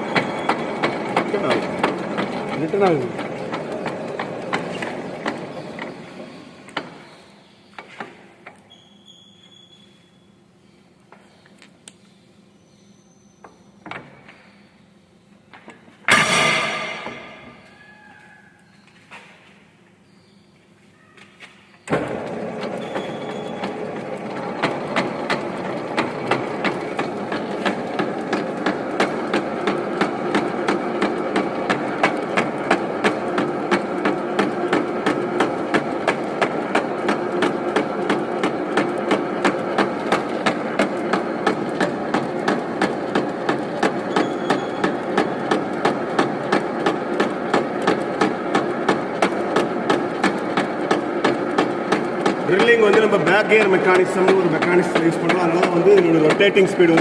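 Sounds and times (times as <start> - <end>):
lathe running with regular knock: 0.0 - 7.0, 15.5 - 17.6, 21.9 - 57.0.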